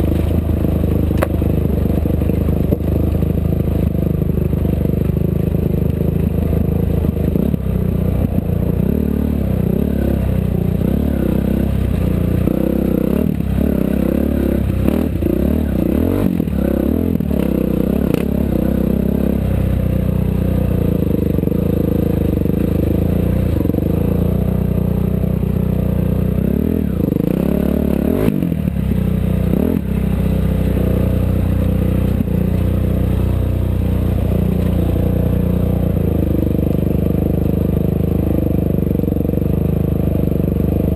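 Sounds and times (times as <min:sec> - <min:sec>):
vehicle rattling and knocking: 0:00.0 - 0:08.8
race vehicle engine revving: 0:00.0 - 0:40.9.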